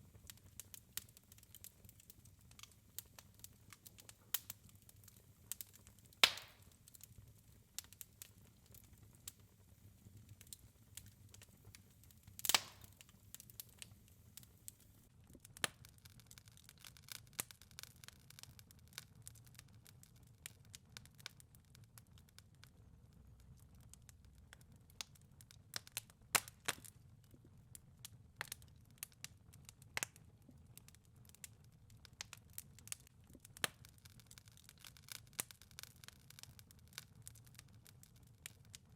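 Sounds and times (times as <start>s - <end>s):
wood fire crackling: 0.0s - 38.9s
loud fire pops: 6.2s - 6.7s, 12.4s - 13.1s.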